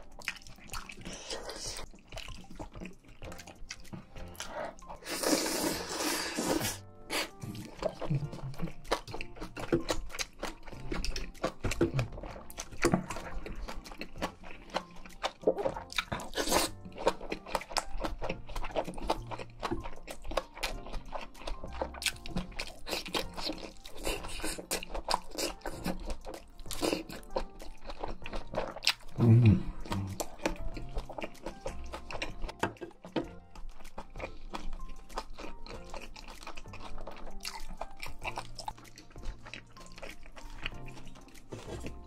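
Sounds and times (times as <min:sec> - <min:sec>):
person chewing crunchy food: 0:00.0 - 0:42.0
soft background music: 0:00.0 - 0:42.0.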